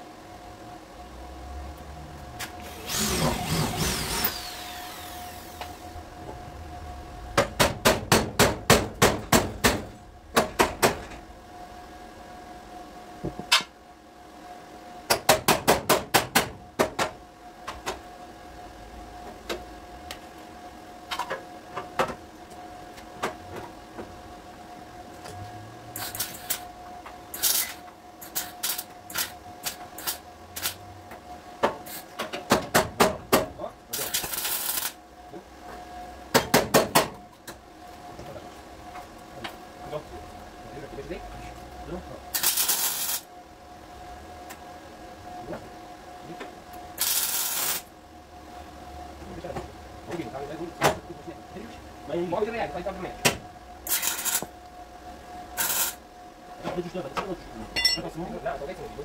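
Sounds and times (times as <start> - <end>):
loud rushing noise: 2.8 - 11.5.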